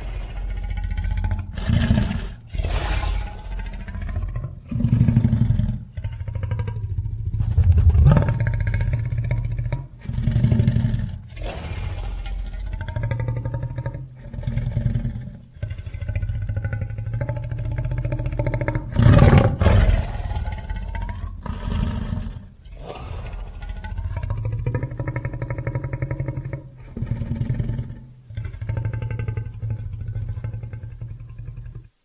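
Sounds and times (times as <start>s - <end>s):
creature roaring calls: 0.0s - 10.4s, 18.5s - 27.5s.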